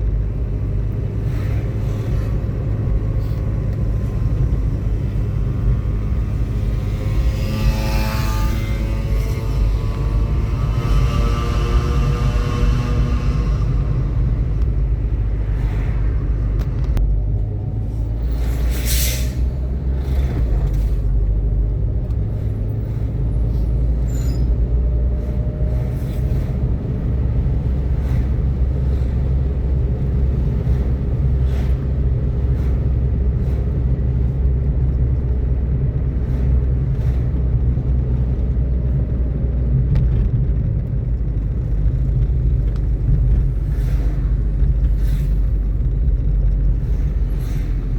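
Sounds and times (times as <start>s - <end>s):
vehicle rumbling on road: 0.0s - 47.9s.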